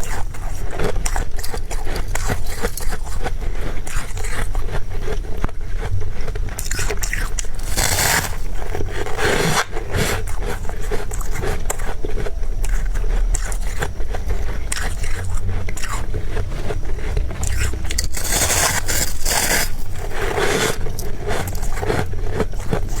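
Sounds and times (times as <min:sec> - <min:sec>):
crunchy chewing of frost: 0:00.0 - 0:23.0
frost scraping: 0:07.6 - 0:10.2, 0:14.4 - 0:23.0.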